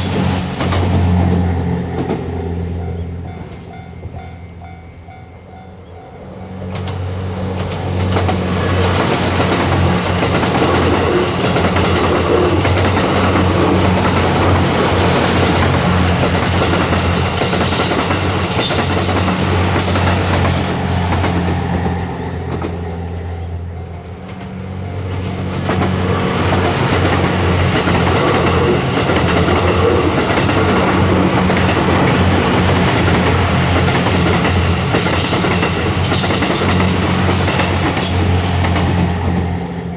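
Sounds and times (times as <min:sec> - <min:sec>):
high wheel squeal: 0:00.0 - 0:01.2, 0:13.1 - 0:24.1, 0:31.1 - 0:39.9
train wheels clacking over rail joints: 0:00.0 - 0:04.8, 0:06.3 - 0:23.0, 0:23.8 - 0:39.9
train engines humming: 0:00.0 - 0:39.9.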